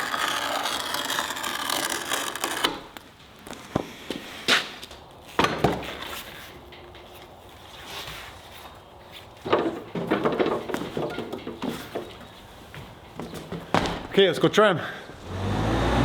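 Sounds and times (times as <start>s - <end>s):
clattering knocks and rattles: 9.4s - 14.2s.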